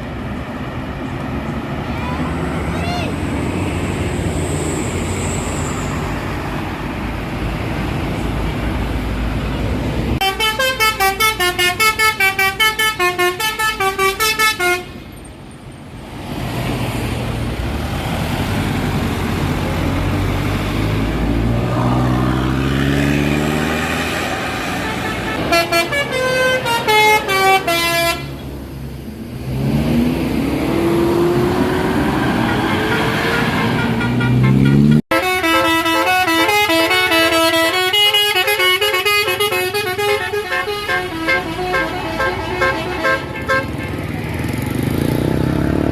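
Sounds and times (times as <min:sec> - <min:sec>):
bus engine accelerating: 0:00.0 - 0:45.9
passing traffic: 0:00.0 - 0:45.9
road noise: 0:00.0 - 0:45.9
multi-tone bus horns tune: 0:10.2 - 0:15.1, 0:24.0 - 0:28.6, 0:32.3 - 0:44.2.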